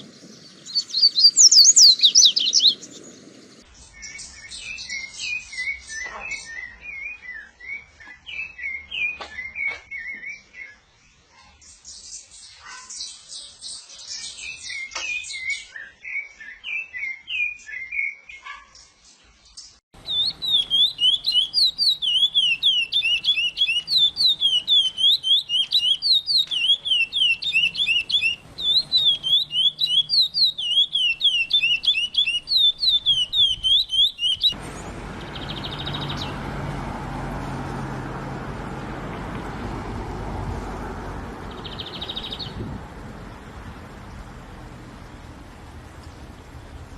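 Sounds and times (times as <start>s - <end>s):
songbird whistling repeated notes: 0.6s - 3.0s, 3.9s - 10.8s, 14.4s - 18.5s, 20.0s - 34.6s
buzzy bird trills: 20.0s - 36.4s.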